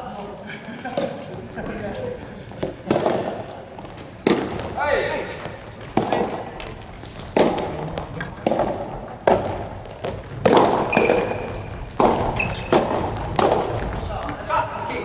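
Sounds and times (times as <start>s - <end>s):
ball popping off racket: 5.4s - 14.0s
short high squeaks: 10.9s - 11.6s, 12.2s - 13.1s.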